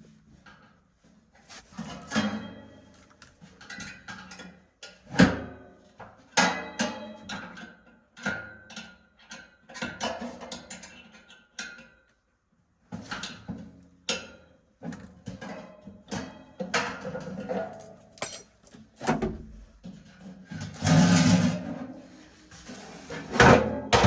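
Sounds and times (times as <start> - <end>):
knocks and rattles of tools: 17.3 - 19.5.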